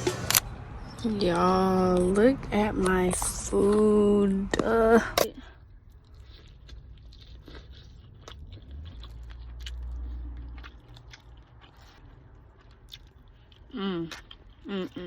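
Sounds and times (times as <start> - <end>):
low steady rumble: 0.0 - 15.0
person chewing crunchy food: 4.5 - 15.0.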